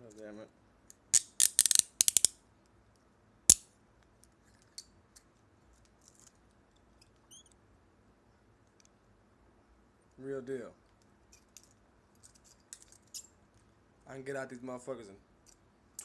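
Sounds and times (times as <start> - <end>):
handcuff ratchet clicks: 1.1 - 2.4.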